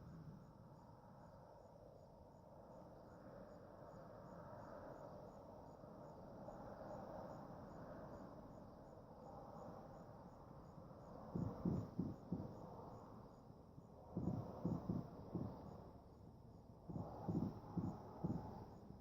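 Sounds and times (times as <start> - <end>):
cricket chirping: 0.0 - 19.0
faint low rumble: 10.7 - 19.0.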